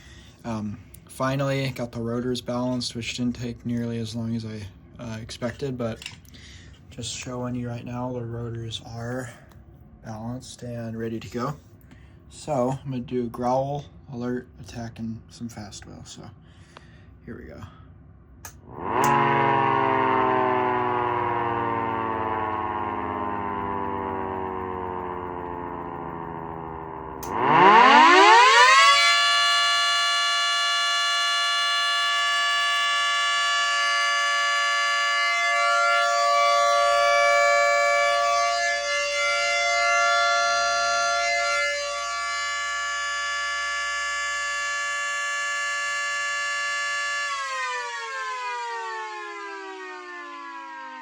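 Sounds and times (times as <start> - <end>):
siren winding up and down: 18.5 - 51.0.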